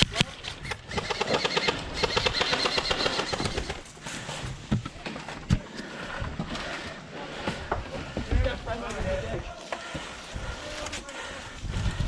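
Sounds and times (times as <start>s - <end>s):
airsoft gun full-auto burst: 0.9s - 3.8s.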